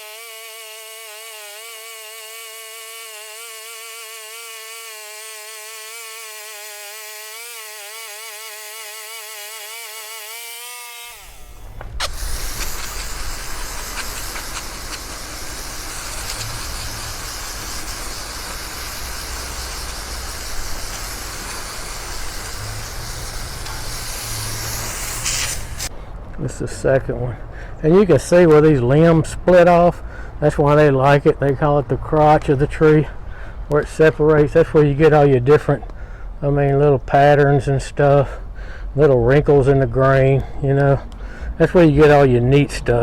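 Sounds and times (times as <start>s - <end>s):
sawmill whining tone: 0.0s - 25.9s
engine rumble with hiss: 11.4s - 28.7s.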